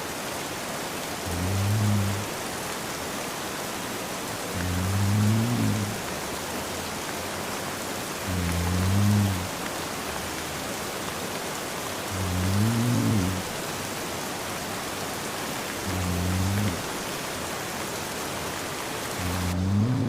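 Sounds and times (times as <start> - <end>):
steady rain: 0.0 - 20.0
man snoring: 1.2 - 2.3, 4.5 - 6.1, 8.3 - 9.5, 12.1 - 13.5, 15.8 - 16.9, 19.2 - 20.0.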